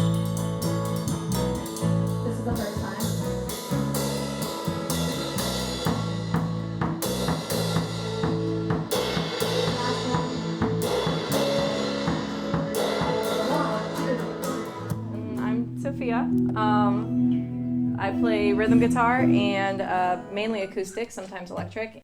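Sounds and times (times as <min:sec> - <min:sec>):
cymbal crashes: 0:00.0 - 0:15.9
drum kit: 0:00.0 - 0:17.0
electric guitar and bass chords: 0:00.0 - 0:20.5.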